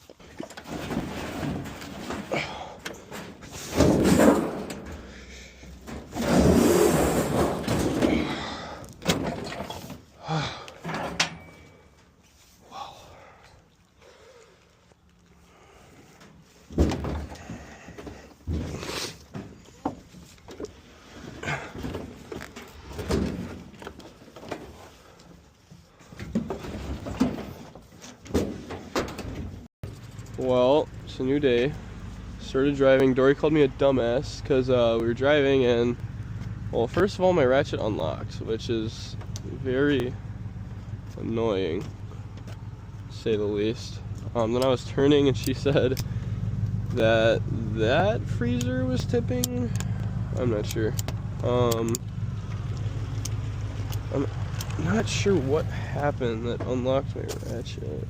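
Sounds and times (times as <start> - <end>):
scrap metal clattering: 0.1 - 10.2
scrap metal knocks and thuds: 0.2 - 10.1, 10.8 - 12.1, 16.2 - 25.1, 26.1 - 30.2.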